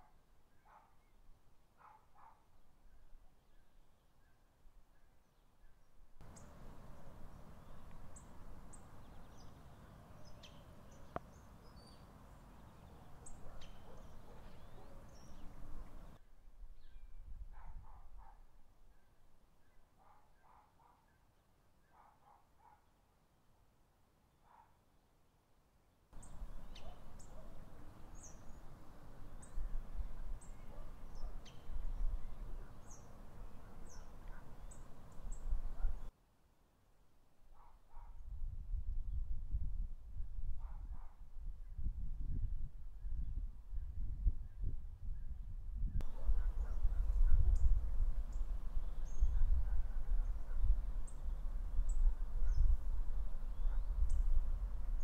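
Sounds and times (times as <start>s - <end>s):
wind rumble on microphone: 13.3s - 18.5s, 26.2s - 36.1s, 37.9s - 55.0s
small bird chirping: 26.2s - 28.7s.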